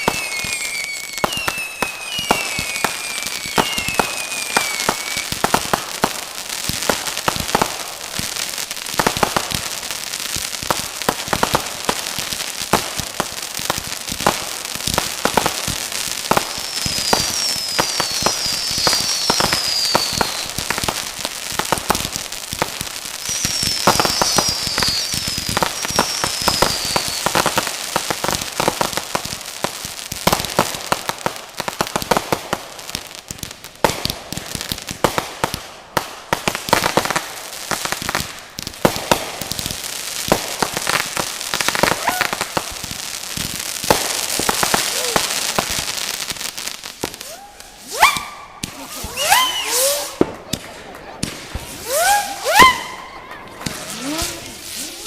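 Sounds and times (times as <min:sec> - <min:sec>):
falling firework whistles: 0:00.0 - 0:05.8, 0:14.8 - 0:29.0, 0:36.7 - 0:50.6, 0:51.2 - 0:55.0
fireworks crackling and popping: 0:00.0 - 0:55.0.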